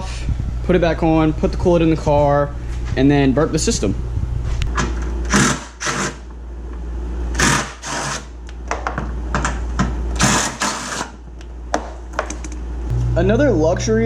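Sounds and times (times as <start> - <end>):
steady low hum: 0.0 - 14.0
hand-held power tool bursts: 10.2 - 11.1.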